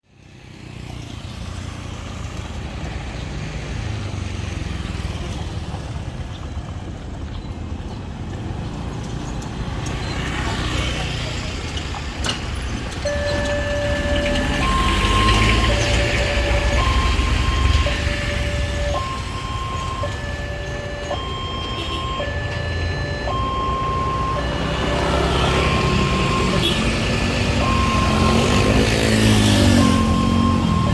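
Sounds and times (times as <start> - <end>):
rumble of rail vehicles: 0.2 - 30.9
two-tone warning siren: 13.0 - 30.9.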